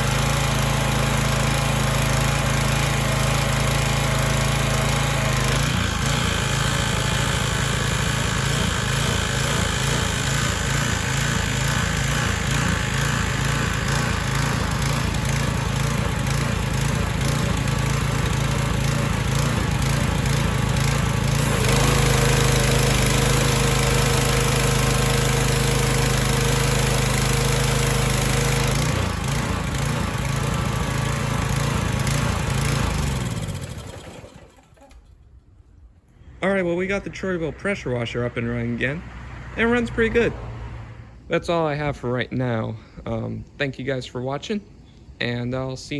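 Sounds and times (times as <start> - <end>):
small gasoline engine running: 0.0 - 35.1.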